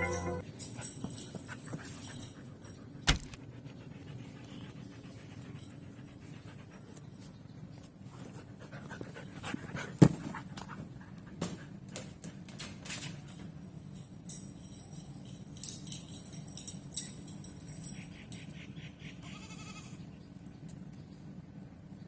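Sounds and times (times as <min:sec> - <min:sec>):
dog panting: 0:00.9 - 0:07.3
sharp thumps: 0:03.1 - 0:03.4.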